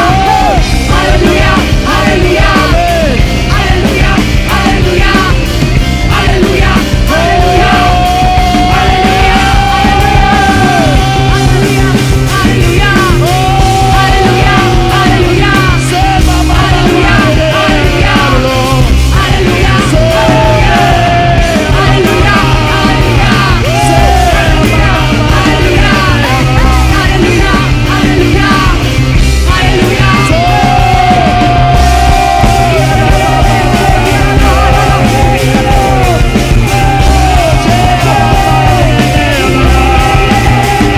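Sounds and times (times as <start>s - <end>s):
band playing loud rock music: 0.0s - 40.9s.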